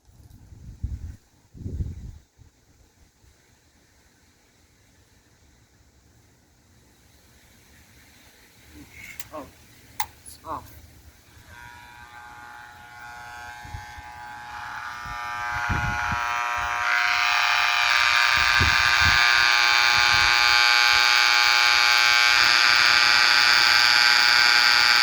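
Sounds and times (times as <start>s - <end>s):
overloaded motor electric buzz: 11.1s - 25.0s.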